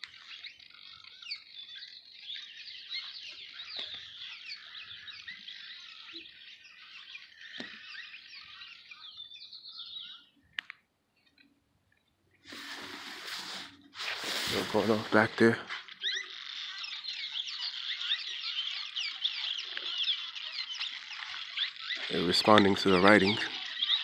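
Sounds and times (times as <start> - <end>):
birds chirping and twittering: 0.0 - 24.0.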